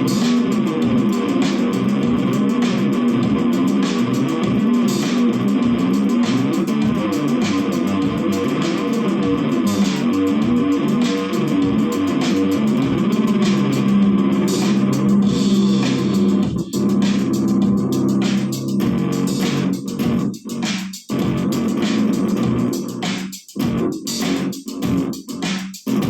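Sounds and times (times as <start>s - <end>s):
electric bass guitar plucked notes: 0.0s - 20.3s.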